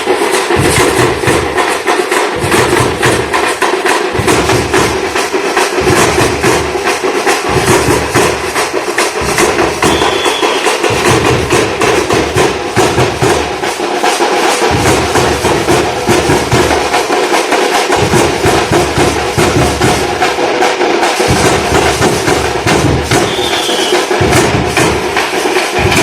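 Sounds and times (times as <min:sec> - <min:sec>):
drum troupe beating fast rhythm: 0:00.0 - 0:26.0
high whistle-like tone: 0:09.8 - 0:10.8, 0:23.2 - 0:24.1.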